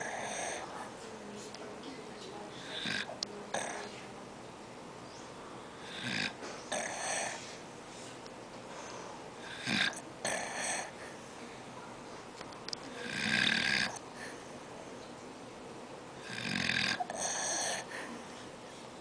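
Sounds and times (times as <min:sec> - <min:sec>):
man snoring: 0:05.8 - 0:07.4, 0:09.4 - 0:10.9, 0:13.0 - 0:14.0, 0:16.2 - 0:17.9.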